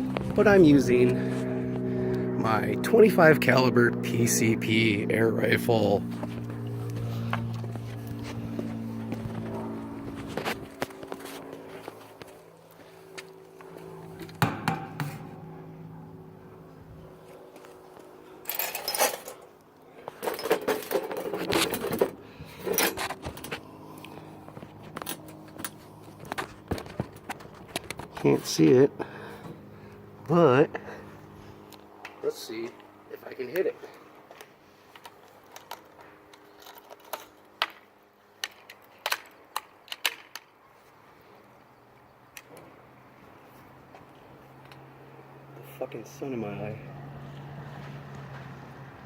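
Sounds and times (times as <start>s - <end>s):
clinking and rattling handling noises: 18.4s - 23.6s.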